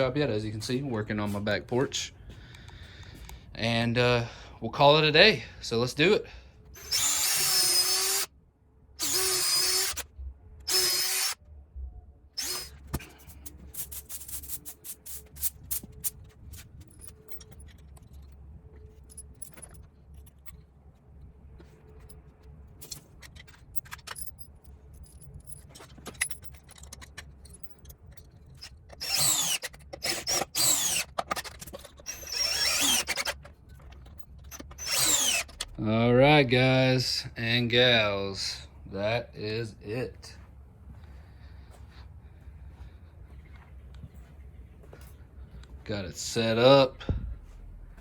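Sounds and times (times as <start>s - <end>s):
power drill driving screws into wood: 6.8s - 8.3s, 9.0s - 11.4s, 12.4s - 13.0s, 28.6s - 33.4s, 34.4s - 35.7s
clicks of parts handled: 21.6s - 32.1s.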